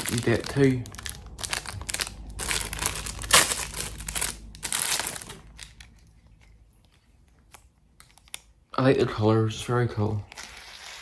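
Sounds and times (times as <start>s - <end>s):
plastic packaging crinkling: 0.0s - 8.4s.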